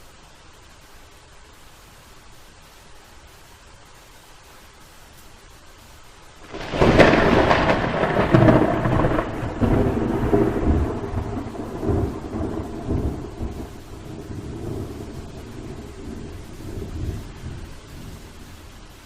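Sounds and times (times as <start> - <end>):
faint hiss: 0.0 - 19.0
thunder crack and rumble: 6.4 - 18.3.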